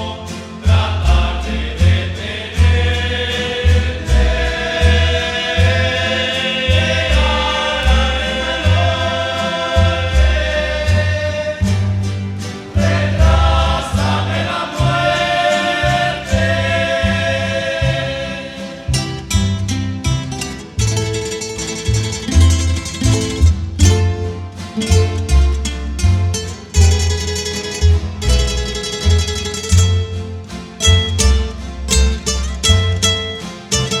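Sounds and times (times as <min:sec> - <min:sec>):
men singing in harmony: 0:00.0 - 0:19.4
plucked bass line: 0:00.0 - 0:34.0
strummed acoustic guitars: 0:00.0 - 0:34.0.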